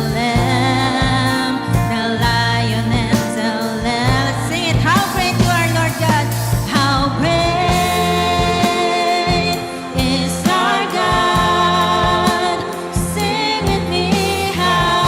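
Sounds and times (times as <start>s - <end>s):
live worship band music: 0.0s - 15.0s
singing held on long notes: 7.2s - 15.0s.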